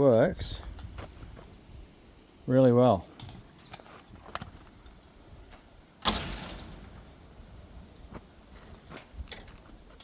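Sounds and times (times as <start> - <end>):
door banging shut: 6.0 - 7.1.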